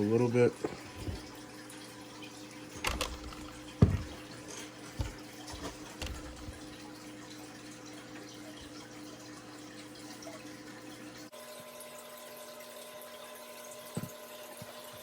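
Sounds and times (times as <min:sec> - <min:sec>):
low electrical hum: 0:00.0 - 0:15.0
light knocks and clicks: 0:02.8 - 0:04.2.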